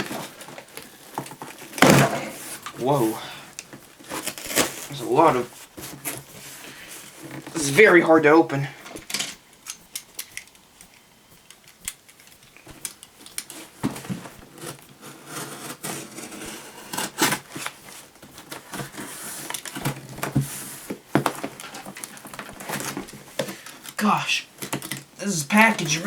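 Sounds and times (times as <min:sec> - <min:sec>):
cardboard box being opened: 0:00.0 - 0:07.6, 0:13.5 - 0:23.7
packing rustling: 0:00.0 - 0:08.0, 0:08.9 - 0:26.0.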